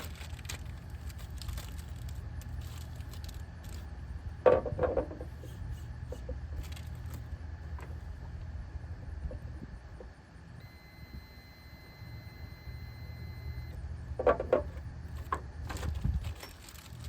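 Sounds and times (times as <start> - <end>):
steady low hum: 0.0 - 17.0
metal tools clinking and rattling: 15.8 - 17.0.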